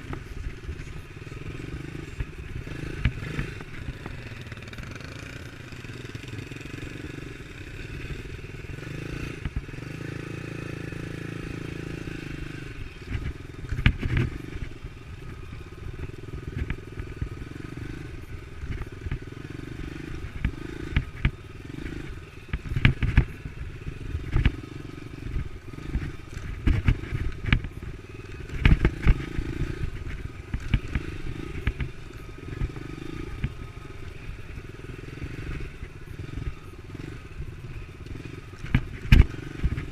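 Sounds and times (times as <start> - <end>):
dirt bike engine running: 0.0 - 39.9
bike knocking and clattering: 38.1 - 39.9.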